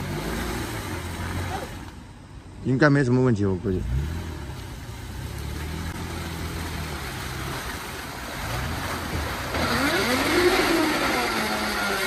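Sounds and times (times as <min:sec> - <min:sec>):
vehicle engine running: 0:00.0 - 0:02.6, 0:03.3 - 0:12.0.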